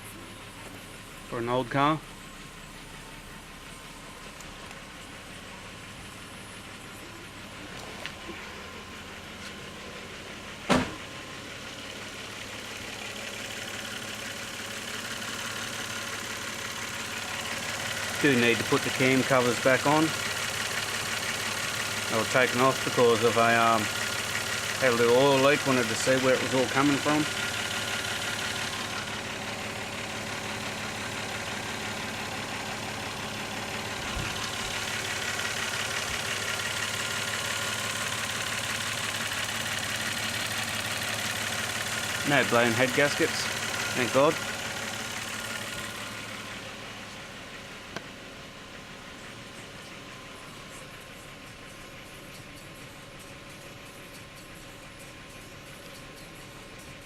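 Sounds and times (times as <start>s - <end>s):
car engine idling: 0.0s - 57.0s
sharp thump: 10.7s - 11.1s.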